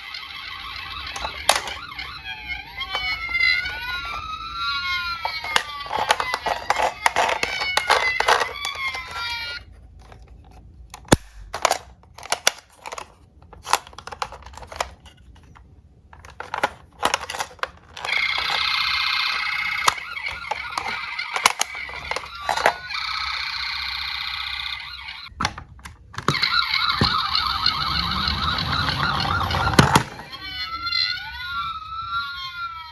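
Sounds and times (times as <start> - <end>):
toy electronic siren: 0.0 - 9.7, 16.3 - 25.3, 26.2 - 32.9
toy cars clicking and knocking: 0.0 - 30.5.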